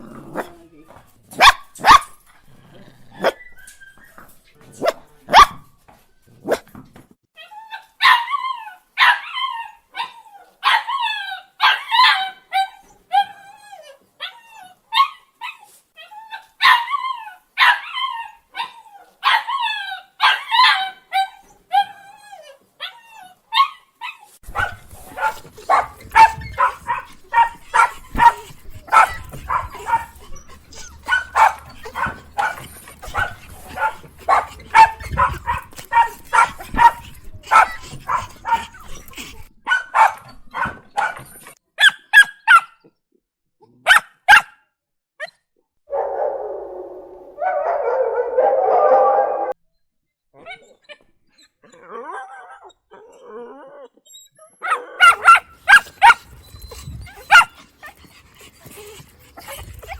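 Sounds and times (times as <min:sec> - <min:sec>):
small dog yipping: 0:07.4 - 0:42.7, 0:53.8 - 0:59.9
dog barking quickly: 0:24.4 - 0:41.2, 0:43.8 - 0:44.5, 0:54.7 - 0:59.9.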